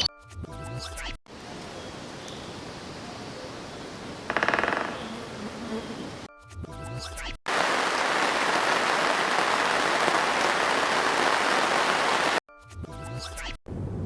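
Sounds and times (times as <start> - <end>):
heavy rain: 1.3 - 6.3, 7.5 - 12.4.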